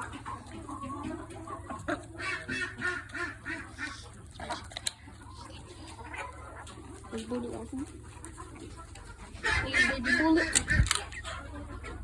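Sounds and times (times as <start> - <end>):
poultry calling: 0.0 - 12.0.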